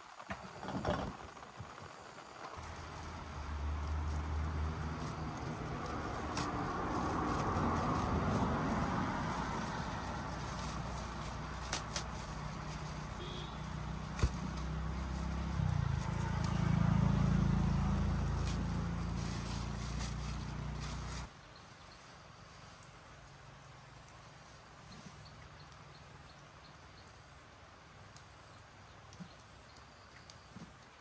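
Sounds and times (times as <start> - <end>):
low motor hum: 2.6 - 21.3.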